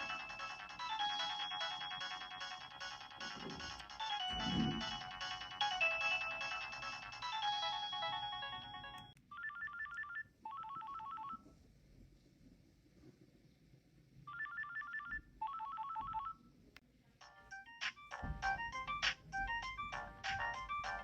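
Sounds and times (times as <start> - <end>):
phone ringtone melody: 0.0 - 11.3, 17.2 - 21.0.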